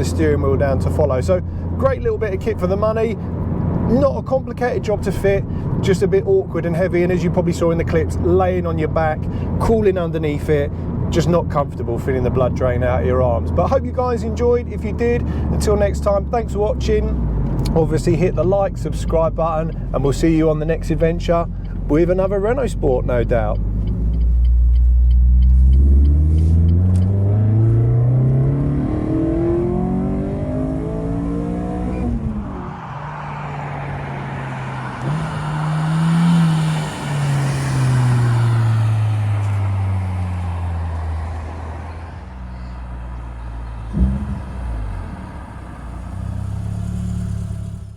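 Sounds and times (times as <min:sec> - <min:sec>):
car engine revving: 0:23.4 - 0:42.3, 0:43.1 - 0:47.9.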